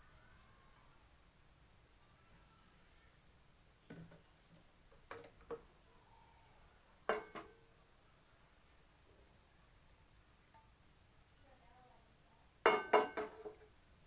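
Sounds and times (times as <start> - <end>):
dishes and utensils clinking: 7.1 - 7.6, 12.6 - 13.7.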